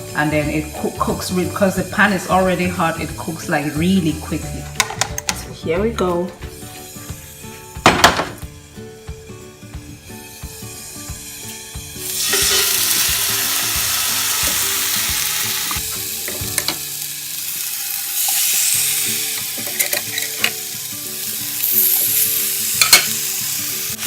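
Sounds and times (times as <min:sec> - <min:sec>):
fish sizzling in a skillet: 0:00.0 - 0:04.6, 0:09.8 - 0:24.0.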